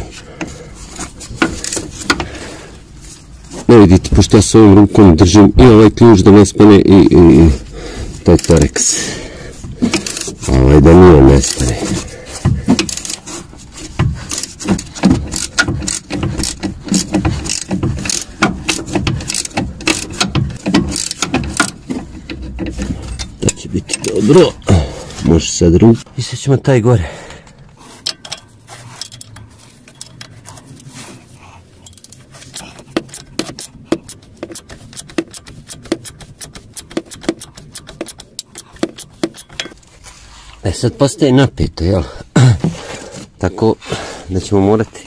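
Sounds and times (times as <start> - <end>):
wrench clicking and scraping: 0.3 - 2.4, 9.6 - 24.4, 27.6 - 39.9.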